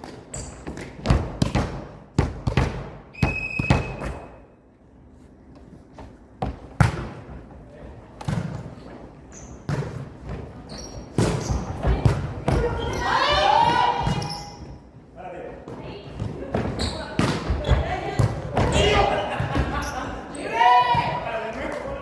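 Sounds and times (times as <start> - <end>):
volleyball strikes and thuds: 0.0 - 4.3, 6.4 - 7.4, 8.2 - 8.7, 9.6 - 10.5, 11.1 - 12.9.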